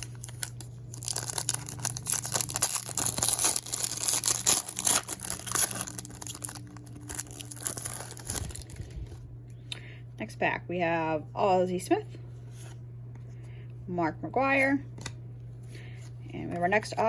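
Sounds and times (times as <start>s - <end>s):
plastic wrapper tearing and crinkling: 0.0s - 9.2s.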